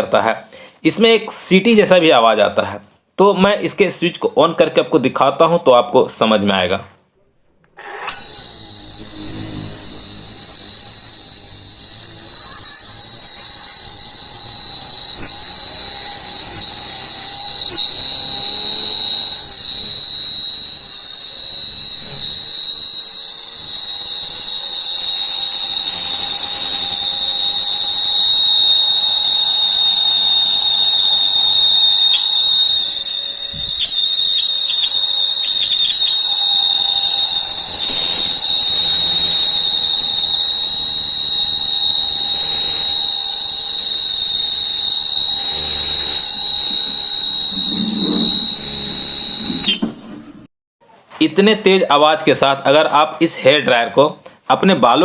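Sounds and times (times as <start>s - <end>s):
hair dryer whistling: 7.8s - 49.8s
blower air rush: 8.0s - 49.7s.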